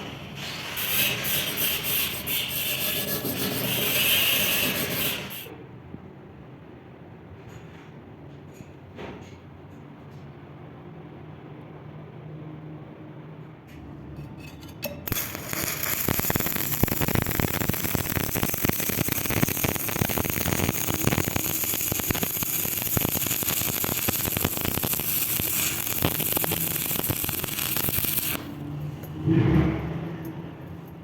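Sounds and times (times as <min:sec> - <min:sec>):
arc welding crackling hiss: 0:00.5 - 0:05.5, 0:15.1 - 0:28.6.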